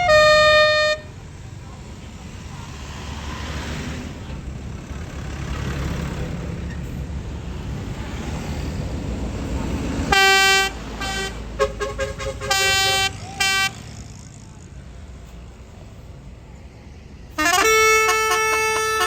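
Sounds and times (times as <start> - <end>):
multi-note horn tune: 0.0 - 1.1, 10.1 - 13.9, 17.4 - 19.0
bus horn toots: 0.0 - 1.2, 10.0 - 14.3, 17.4 - 19.0.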